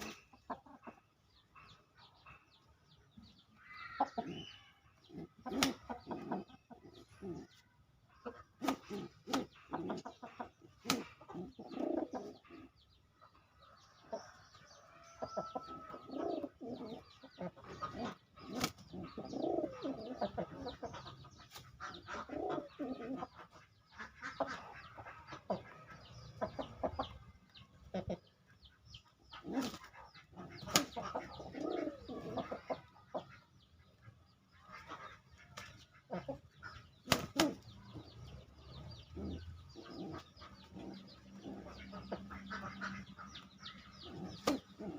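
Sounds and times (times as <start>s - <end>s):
chickens clucking: 0.0s - 44.9s
pigeons cooing: 3.1s - 28.2s, 28.8s - 44.9s
wings flapping: 37.0s - 37.7s.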